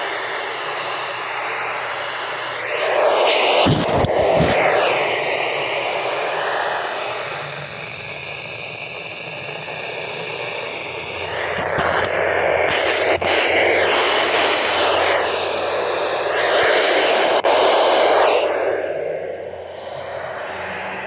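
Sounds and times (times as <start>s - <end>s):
radio static hiss: 0.0s - 21.0s.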